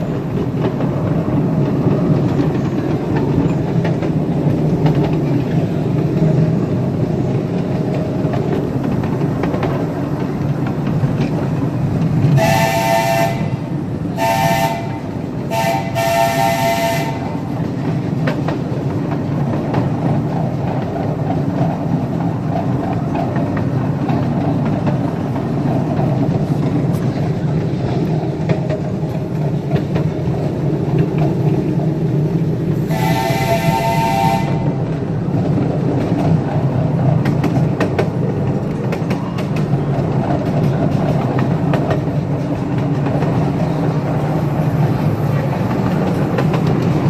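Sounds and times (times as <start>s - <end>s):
train rumbling on track: 0.0s - 47.0s
steam locomotive whistle blasts: 12.4s - 17.4s, 32.8s - 34.7s.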